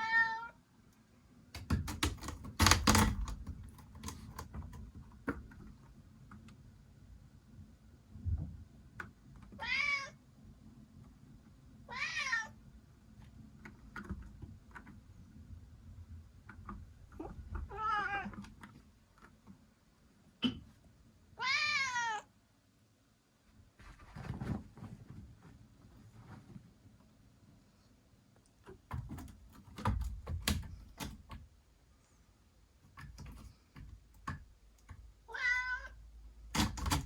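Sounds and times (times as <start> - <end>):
cat meowing: 0.0 - 0.6, 9.6 - 10.2, 11.9 - 12.6, 17.2 - 18.4, 21.4 - 22.3, 35.3 - 36.0.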